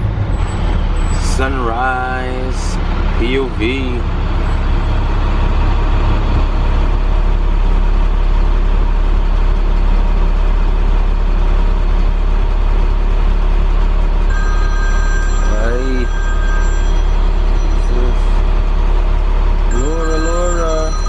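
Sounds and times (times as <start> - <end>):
vehicle engine and road noise: 0.0 - 21.0
thin high tones: 14.3 - 18.5.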